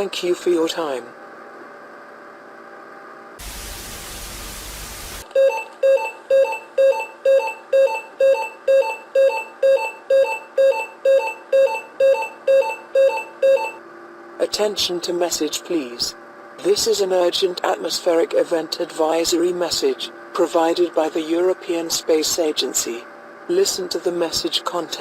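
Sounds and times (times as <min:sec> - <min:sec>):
static hiss: 0:03.4 - 0:05.2.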